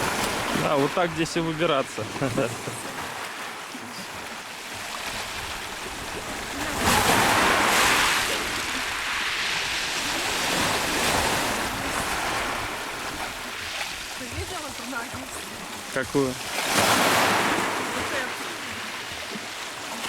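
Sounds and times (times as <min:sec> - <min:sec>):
sea waves crashing on shore: 0:00.0 - 0:20.0
wind on microphone: 0:05.0 - 0:15.6.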